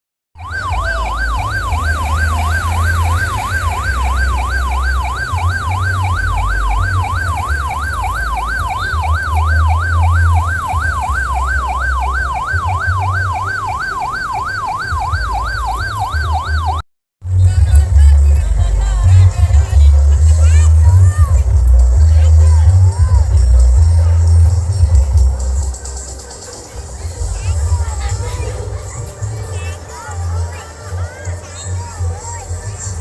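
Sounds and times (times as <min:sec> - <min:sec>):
deep booming bass: 0:00.4 - 0:13.8, 0:14.9 - 0:26.2, 0:26.9 - 0:29.4
electronic siren yelping: 0:00.4 - 0:16.8.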